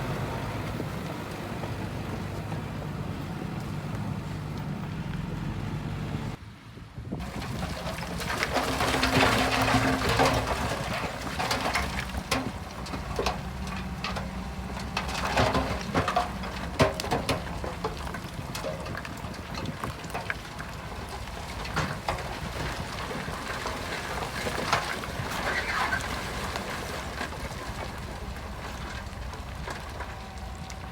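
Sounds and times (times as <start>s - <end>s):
bulldozer diesel engine running: 0.0s - 30.9s
stones and metal knocking: 7.3s - 22.9s.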